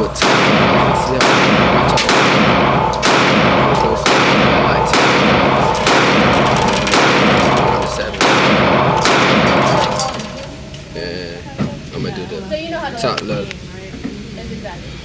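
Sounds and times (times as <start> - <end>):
handgun shots: 8.2 - 10.2.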